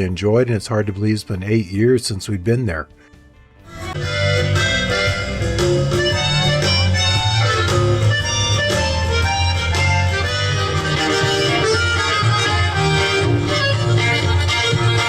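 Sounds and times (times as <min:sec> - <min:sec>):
guitar: 0:02.4 - 0:15.0
reedy melody: 0:03.7 - 0:15.0
steady bass beat: 0:03.7 - 0:15.0.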